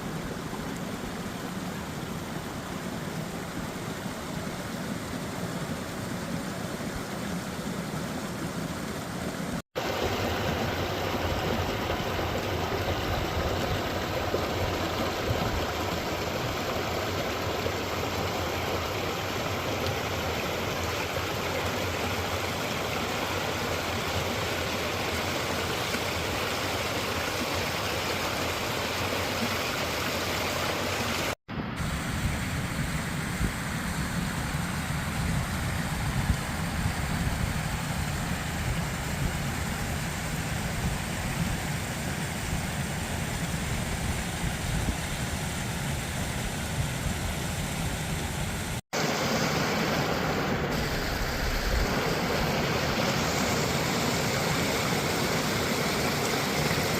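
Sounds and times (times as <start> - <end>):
stream water rushing over rocks: 0.0 - 56.9.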